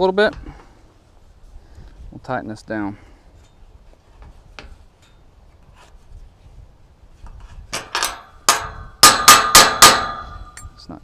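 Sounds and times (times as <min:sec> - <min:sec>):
metal clanking on gate bolt: 0:07.7 - 0:10.7.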